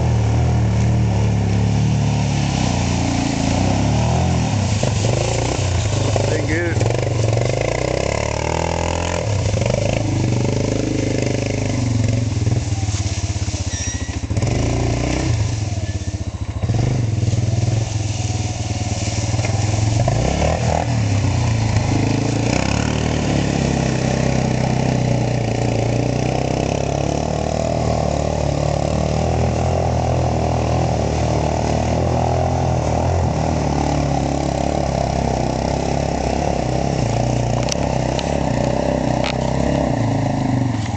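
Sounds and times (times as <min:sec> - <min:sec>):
atv engine revving: 0:00.0 - 0:40.9.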